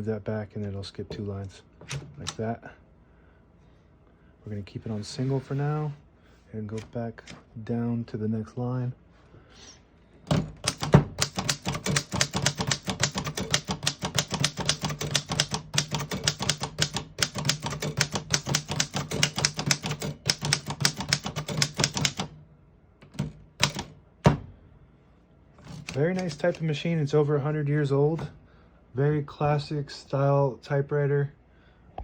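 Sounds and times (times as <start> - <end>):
typewriter typing: 10.3 - 22.3, 23.0 - 23.9, 25.6 - 26.6.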